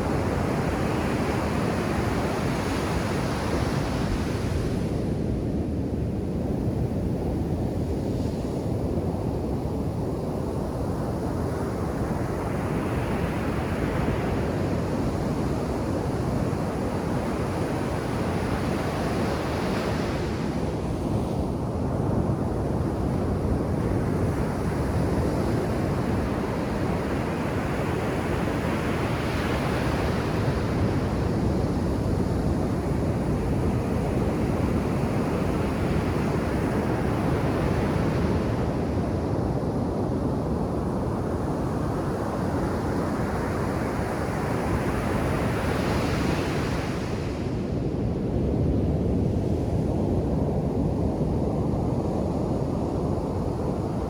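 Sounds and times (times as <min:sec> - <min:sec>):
ocean waves breaking on beach: 0:40.3 - 0:47.9.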